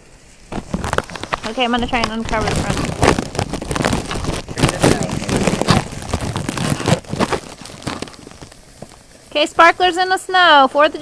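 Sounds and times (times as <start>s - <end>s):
plastic crinkling: 0.4s - 9.4s.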